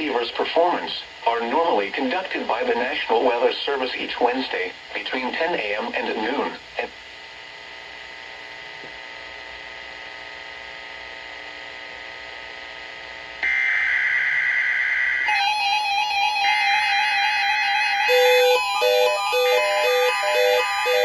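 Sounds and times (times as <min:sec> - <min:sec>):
radio static hiss: 0:00.0 - 0:13.4
mains hum: 0:00.0 - 0:21.0
screechy digital data bursts: 0:13.4 - 0:21.0
electronic beeping tone stepping in pitch: 0:13.5 - 0:21.0.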